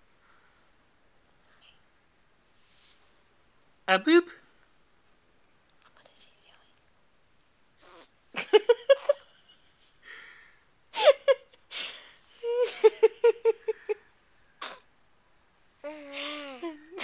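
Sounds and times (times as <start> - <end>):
baby laughing: 8.6 - 9.3, 15.8 - 17.0.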